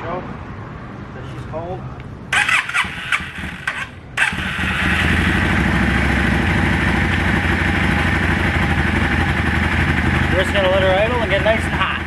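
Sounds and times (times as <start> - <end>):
motorcycle engine cranking: 2.3 - 5.5
motorcycle engine idling: 2.3 - 12.0.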